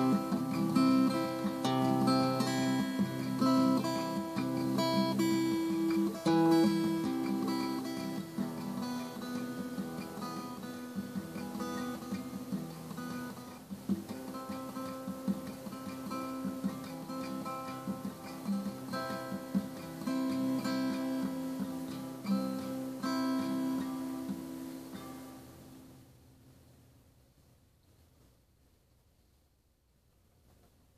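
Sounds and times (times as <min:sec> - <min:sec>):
acoustic guitar piece: 0:00.0 - 0:26.9.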